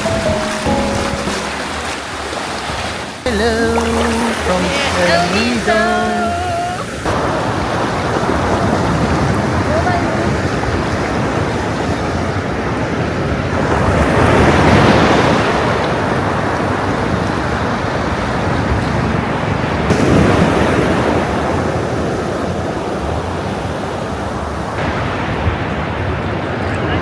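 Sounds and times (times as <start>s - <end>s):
ocean surf on sandy beach: 0.0s - 27.0s.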